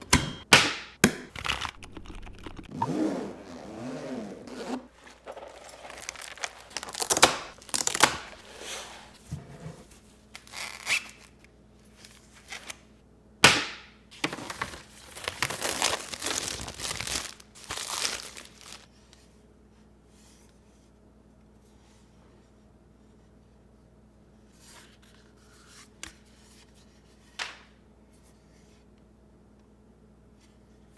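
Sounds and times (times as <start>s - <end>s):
packaging crinkling and tearing: 4.9s - 9.2s, 14.2s - 18.9s.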